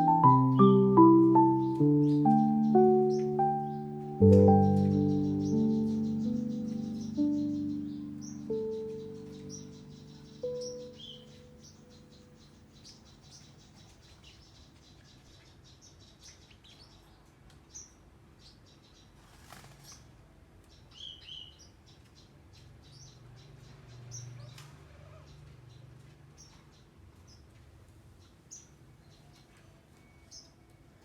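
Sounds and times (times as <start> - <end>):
faint birds chirping: 0.0 - 17.0.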